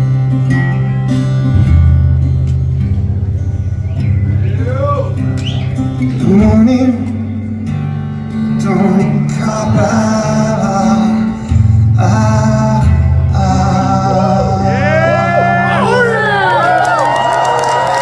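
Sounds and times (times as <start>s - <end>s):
sustained low bass notes: 0.0s - 15.6s
guitars: 0.0s - 18.0s
man singing: 6.0s - 7.6s, 8.5s - 16.4s.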